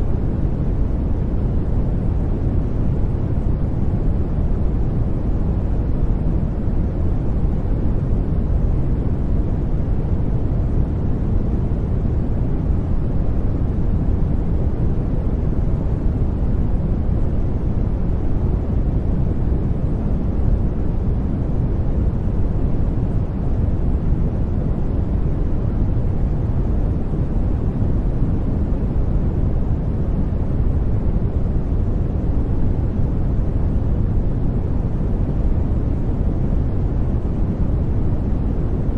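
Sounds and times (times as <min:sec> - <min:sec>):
deep white noise: 0:00.0 - 0:38.9.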